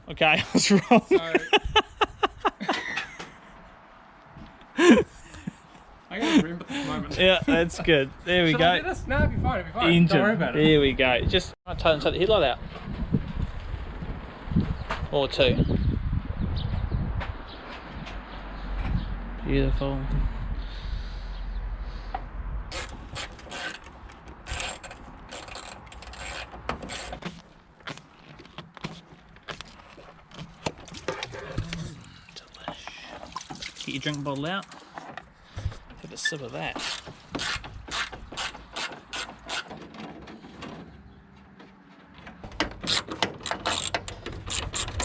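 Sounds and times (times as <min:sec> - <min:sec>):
socket ratchet clicking: 0:42.8 - 0:45.0.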